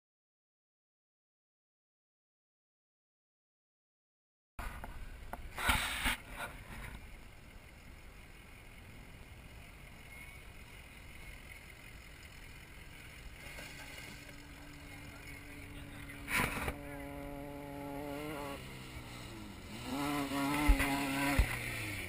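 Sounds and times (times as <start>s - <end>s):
off-road vehicle rumble: 4.6s - 22.0s
wind: 4.6s - 22.0s.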